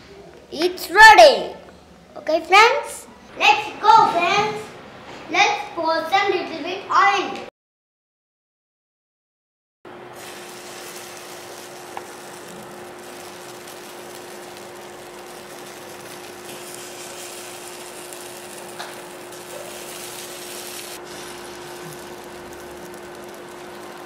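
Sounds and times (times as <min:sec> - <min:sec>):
food sizzling in oil: 0:10.1 - 0:24.0.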